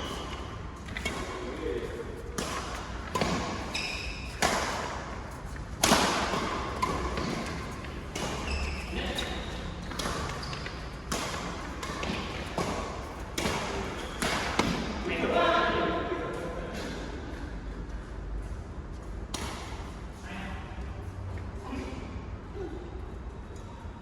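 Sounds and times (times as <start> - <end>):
shoes squeaking on court: 0.0 - 1.6, 2.7 - 4.8, 6.4 - 14.6
rackets hitting shuttlecock: 2.3 - 5.1, 5.7 - 15.0.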